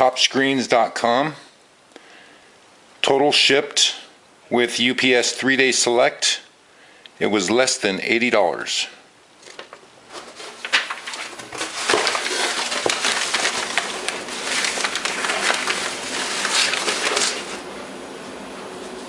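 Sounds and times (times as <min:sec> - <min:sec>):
plastic packaging crinkling: 0:09.4 - 0:17.7.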